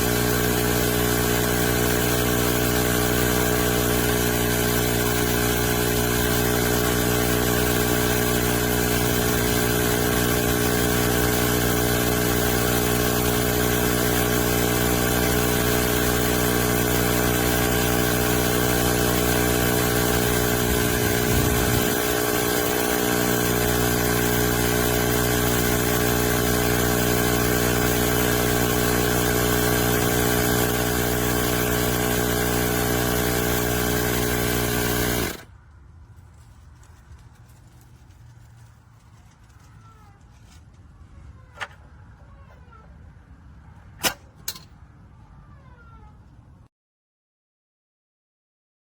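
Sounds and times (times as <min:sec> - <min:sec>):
tire inflator compressor running: 0:00.0 - 0:35.5.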